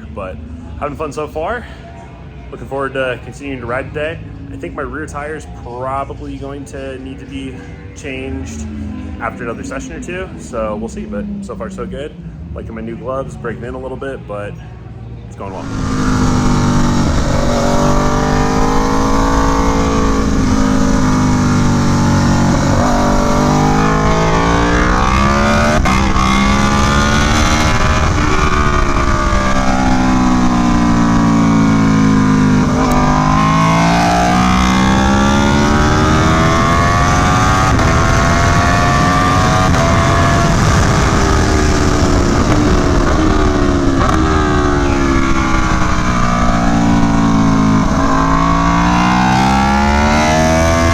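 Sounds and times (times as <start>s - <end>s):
motorcycle engine revving: 15.4s - 50.9s
wind noise: 15.5s - 50.9s.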